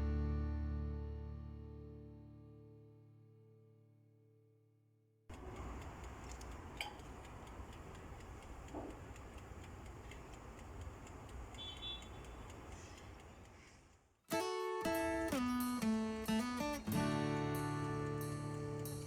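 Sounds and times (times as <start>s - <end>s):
timer ticking: 5.3s - 19.0s
oven humming: 15.0s - 19.0s.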